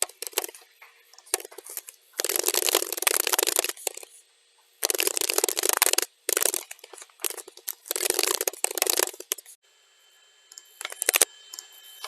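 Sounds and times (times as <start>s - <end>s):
fast keyboard typing: 0.0s - 0.6s, 1.2s - 4.1s, 4.8s - 9.5s, 10.8s - 11.3s.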